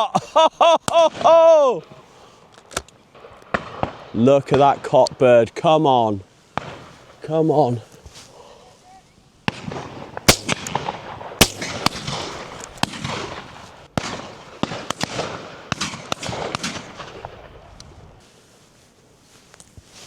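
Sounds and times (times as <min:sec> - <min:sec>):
shotgun shots echoing: 0:09.5 - 0:16.9.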